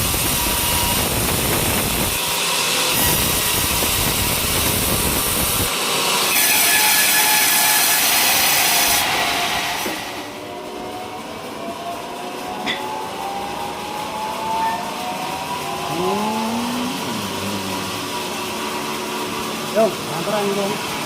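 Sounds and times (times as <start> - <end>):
sawmill blade cutting logs: 0.0 - 10.4.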